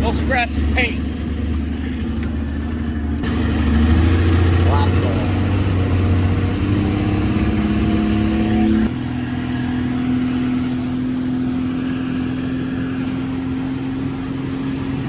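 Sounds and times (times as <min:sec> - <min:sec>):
outboard boat motor running: 0:00.0 - 0:15.0.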